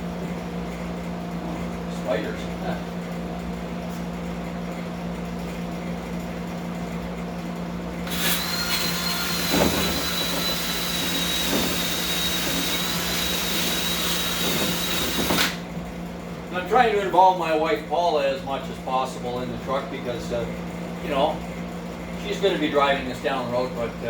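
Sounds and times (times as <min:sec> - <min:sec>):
low background hum: 0:00.0 - 0:24.0
small electric tool whining: 0:08.0 - 0:15.6.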